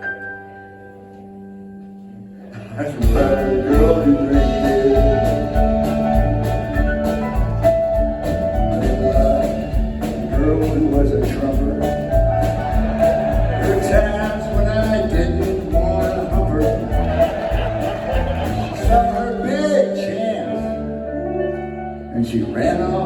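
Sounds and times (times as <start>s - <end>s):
sustained guitar: 0.0s - 23.0s
person singing: 1.9s - 23.0s
live rock band playing: 2.8s - 22.1s
steady bass and drum beat: 3.0s - 19.4s.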